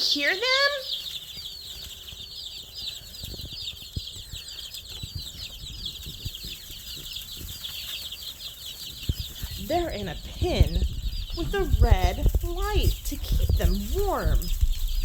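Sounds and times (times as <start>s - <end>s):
baby chicks peeping: 0.0s - 15.0s
faint low thumps: 9.1s - 15.0s.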